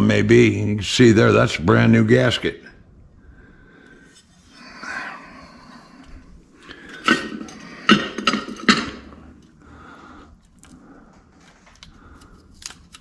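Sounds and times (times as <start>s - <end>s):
engine parts and tools clinking: 6.6s - 9.5s.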